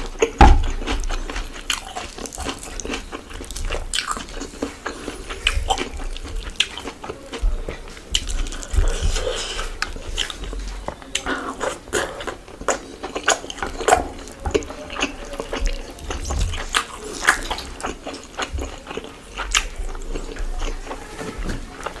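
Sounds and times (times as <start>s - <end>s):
wet chewing and mouth smacks: 0.0s - 21.0s
low thumps: 0.4s - 1.2s.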